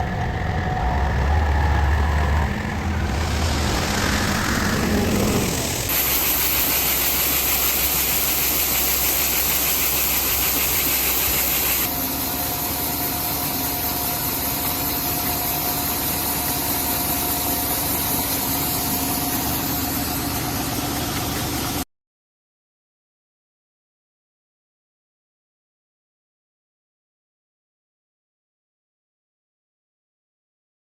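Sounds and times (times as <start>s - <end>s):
diesel engine running: 0.0s - 21.8s
thin engine whine: 0.0s - 21.8s.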